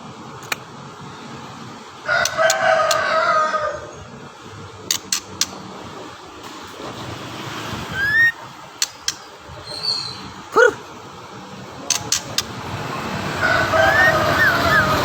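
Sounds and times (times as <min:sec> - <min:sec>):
sharp clicks: 0:04.9 - 0:05.6, 0:08.8 - 0:09.3, 0:11.9 - 0:12.6
bird rising whistle: 0:07.9 - 0:08.4, 0:13.8 - 0:15.0
bird yelp: 0:07.9 - 0:10.8, 0:13.5 - 0:15.0.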